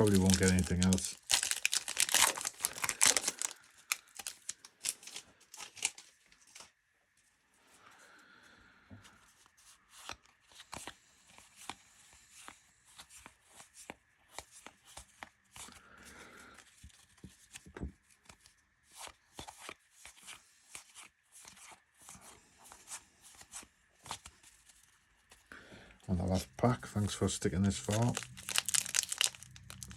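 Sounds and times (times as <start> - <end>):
cards being flipped: 27.7 - 29.9.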